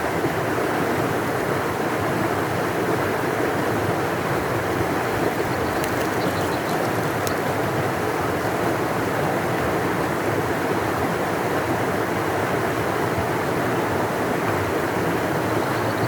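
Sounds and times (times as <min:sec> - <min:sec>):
river rushing: 0:00.0 - 0:16.0.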